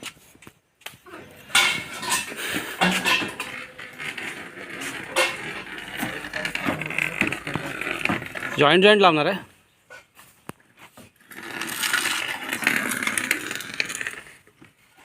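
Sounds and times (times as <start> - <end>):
pipe fittings clinking and knocking: 1.5 - 8.3.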